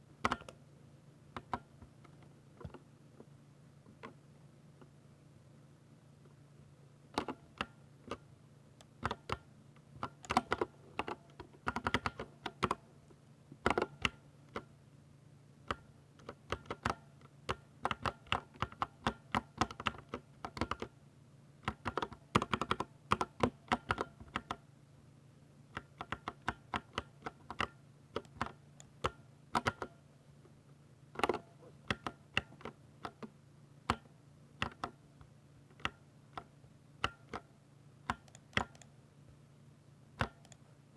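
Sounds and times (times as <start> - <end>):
mechanical keyboard typing: 10.0 - 12.8, 15.7 - 20.9, 21.7 - 24.6, 25.8 - 30.0, 31.2 - 33.3, 34.6 - 35.0, 38.1 - 38.9.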